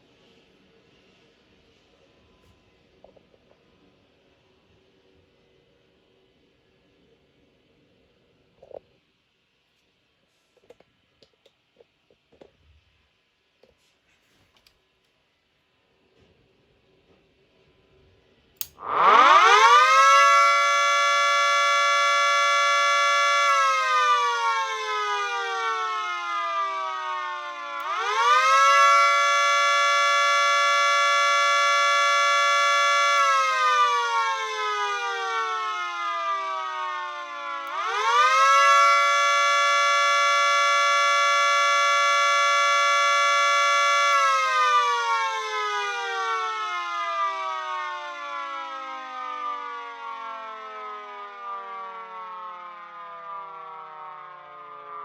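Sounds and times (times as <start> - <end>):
siren switch click: 18.6 - 24.1, 27.8 - 33.9, 37.6 - 44.8
two-tone siren wailing: 18.6 - 55.0.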